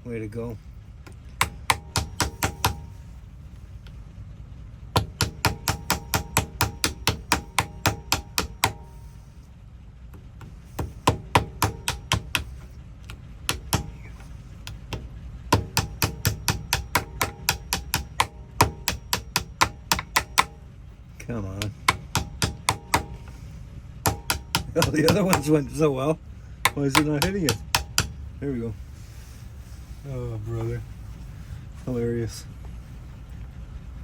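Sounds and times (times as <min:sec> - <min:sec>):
small hammer tapping on metal: 0:01.1 - 0:03.0, 0:05.0 - 0:09.2, 0:10.2 - 0:12.7, 0:13.5 - 0:20.6, 0:21.6 - 0:23.4, 0:24.0 - 0:25.9, 0:26.6 - 0:28.2.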